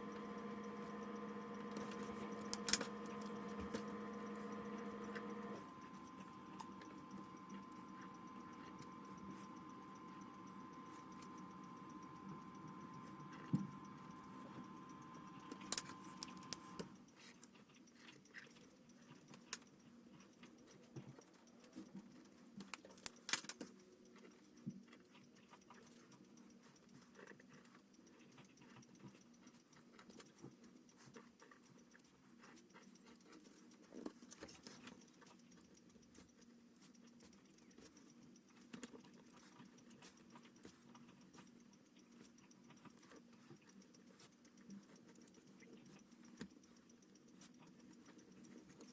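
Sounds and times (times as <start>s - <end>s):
faint steady tone: 0.0s - 17.1s.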